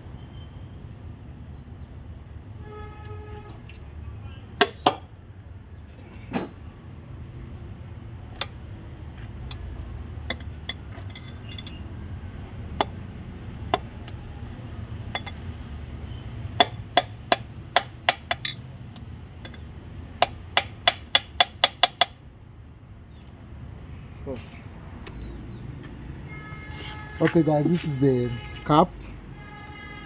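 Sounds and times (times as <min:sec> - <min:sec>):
taps on a piston: 0:20.2 - 0:22.2.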